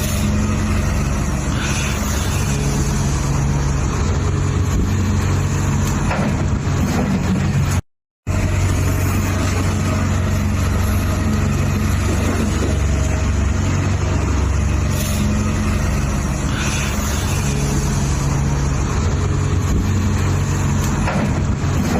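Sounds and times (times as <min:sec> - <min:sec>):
toy excavator motor drone: 0:00.0 - 0:03.8, 0:14.4 - 0:18.8.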